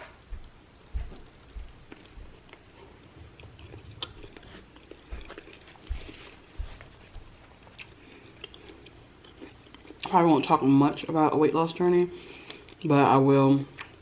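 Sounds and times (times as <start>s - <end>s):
close-up chewing: 1.0s - 10.1s, 12.2s - 12.9s.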